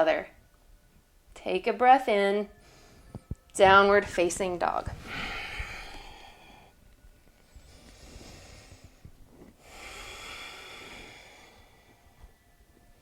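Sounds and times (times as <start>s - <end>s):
faint slow breathing: 2.5s - 3.3s, 5.0s - 12.6s.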